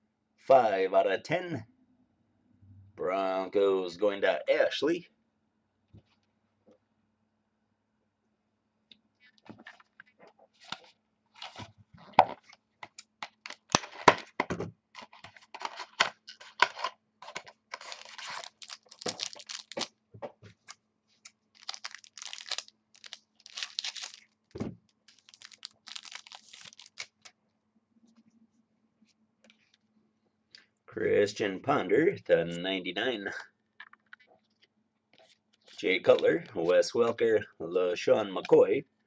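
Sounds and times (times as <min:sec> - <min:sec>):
cards being handled: 0:15.0 - 0:27.3
wrapper tearing and crinkling: 0:17.7 - 0:19.9, 0:21.5 - 0:24.4, 0:25.0 - 0:27.3.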